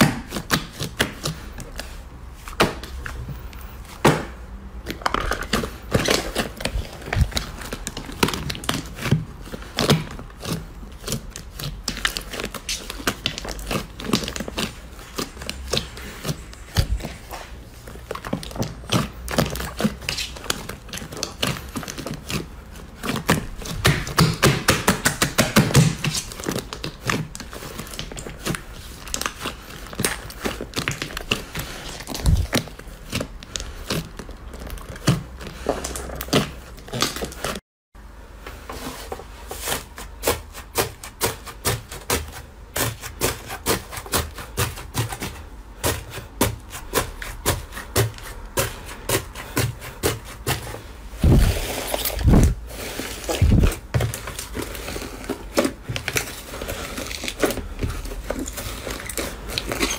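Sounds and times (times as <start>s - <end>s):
slime squeezed by hand: 53.2s - 53.9s.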